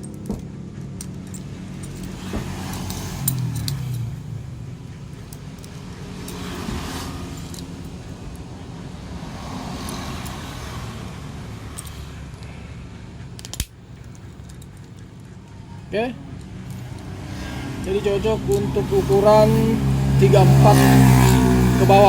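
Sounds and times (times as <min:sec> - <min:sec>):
metallic clicks of belt buckle: 0:00.0 - 0:04.3, 0:04.9 - 0:08.5, 0:11.6 - 0:12.6, 0:13.2 - 0:15.6, 0:16.3 - 0:17.1.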